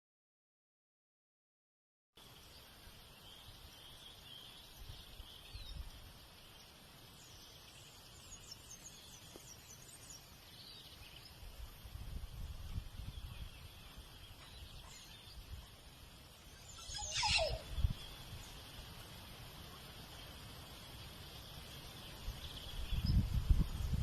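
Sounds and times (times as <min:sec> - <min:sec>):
insect drone: 0:02.2 - 0:24.0
low rumbling wind gusts: 0:10.0 - 0:18.8, 0:21.6 - 0:24.0
bird chirps: 0:13.0 - 0:18.9.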